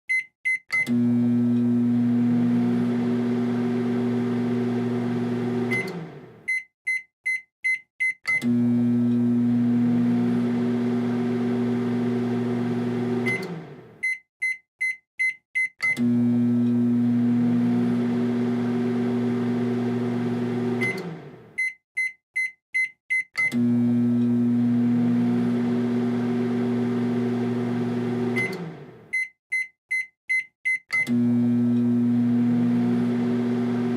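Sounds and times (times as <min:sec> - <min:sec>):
microwave oven humming: 0:00.9 - 0:06.4, 0:08.4 - 0:14.0, 0:16.0 - 0:21.5, 0:23.5 - 0:29.1, 0:31.1 - 0:33.9.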